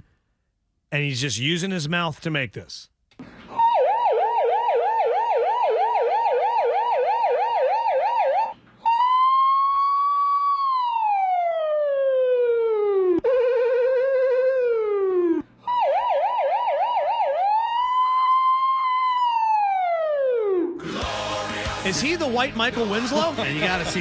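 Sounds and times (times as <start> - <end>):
man imitating police siren: 3.6 - 15.8.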